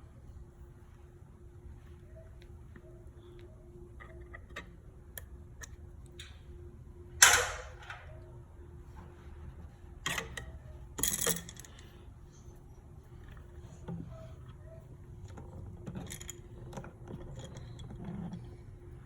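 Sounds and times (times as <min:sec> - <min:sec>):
small handling clicks: 0:10.0 - 0:12.0.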